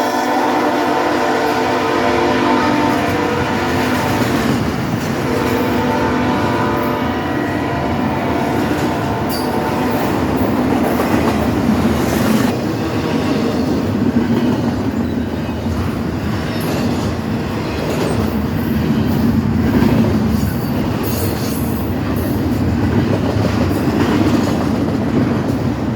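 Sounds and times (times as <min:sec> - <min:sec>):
locomotive air horn: 0:00.0 - 0:10.4.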